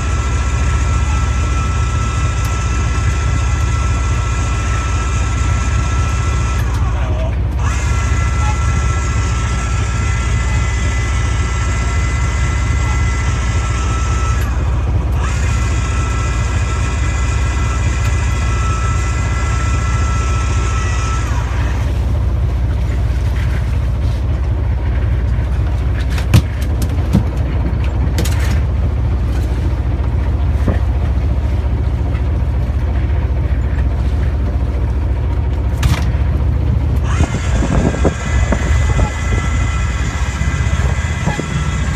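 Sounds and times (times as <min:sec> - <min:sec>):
boat engine running: 0:00.0 - 0:41.9
high steady whine: 0:24.8 - 0:41.9.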